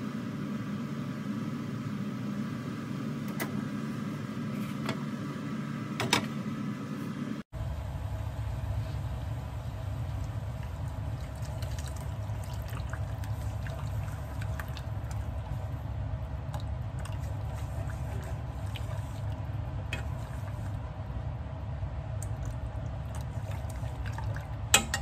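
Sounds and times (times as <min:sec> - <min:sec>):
steady low hum: 0:00.0 - 0:25.0
liquid bubbling in a pot: 0:08.1 - 0:25.0.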